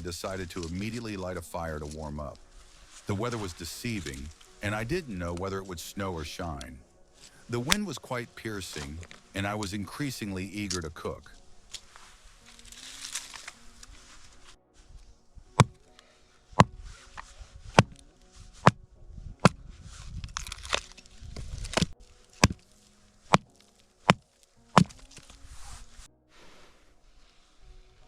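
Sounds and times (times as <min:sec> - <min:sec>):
axe chopping firewood: 0:21.6 - 0:22.6, 0:24.1 - 0:25.2.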